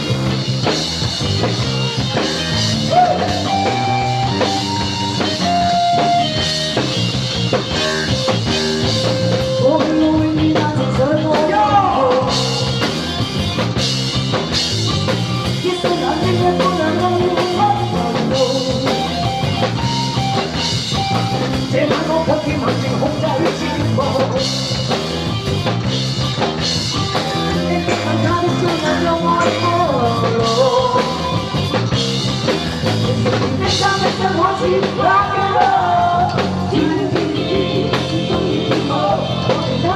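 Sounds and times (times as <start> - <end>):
drum kit: 0.0 - 39.9
guitar: 0.0 - 39.9
person singing: 2.7 - 4.5, 8.8 - 12.9, 15.5 - 19.2, 21.6 - 24.6, 27.2 - 31.8, 33.3 - 39.9.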